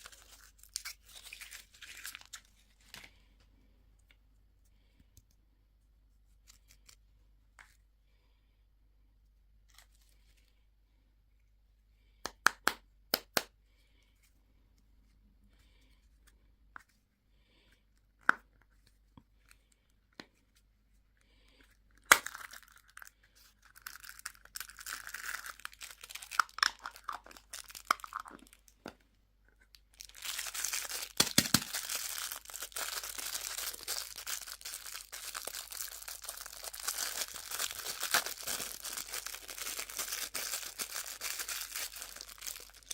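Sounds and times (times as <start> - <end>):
candy wrapper tearing and crinkling: 0.0 - 3.1, 21.8 - 28.8, 29.7 - 42.9.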